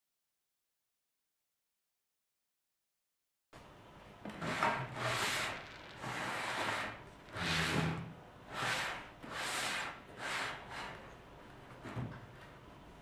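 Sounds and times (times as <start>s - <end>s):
rubbing strokes on wood: 4.4s - 11.0s.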